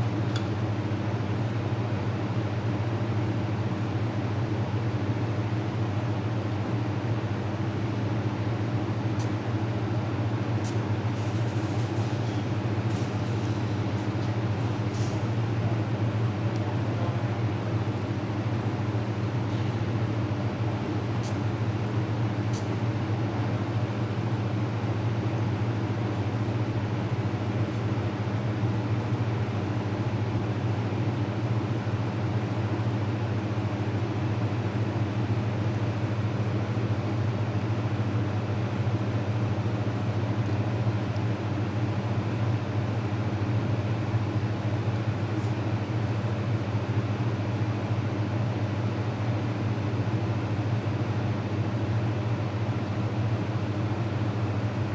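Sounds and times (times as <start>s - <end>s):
laser welding machine humming: 7.3s - 47.3s.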